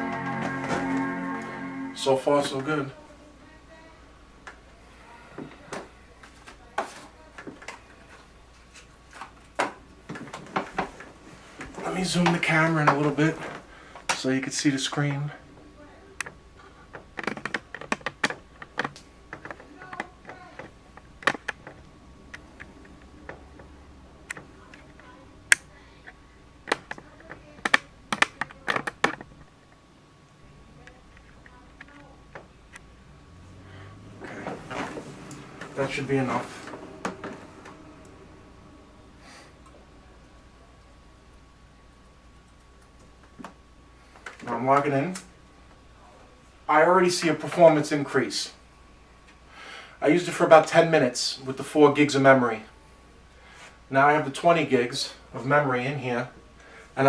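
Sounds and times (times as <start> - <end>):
light clicks and knocks: 15.6 - 29.8.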